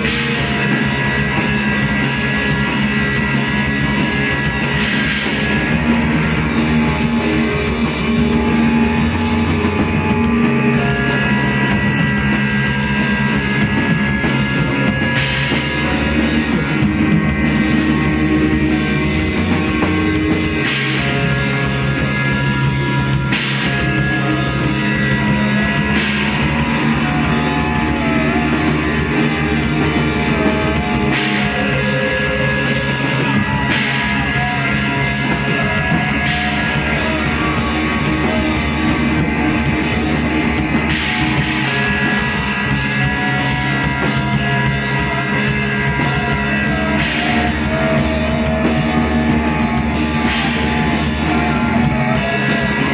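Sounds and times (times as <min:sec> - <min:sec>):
drone tone: 0:00.0 - 0:52.9
drum kit beat: 0:00.0 - 0:52.9
electric guitar lead bending: 0:00.0 - 0:52.9.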